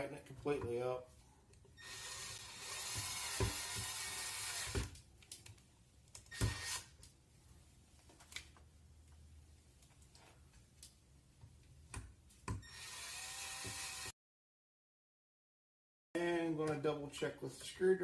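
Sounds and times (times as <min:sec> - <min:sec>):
power drill driving screws: 0:01.8 - 0:05.0, 0:06.3 - 0:06.9, 0:12.6 - 0:14.1.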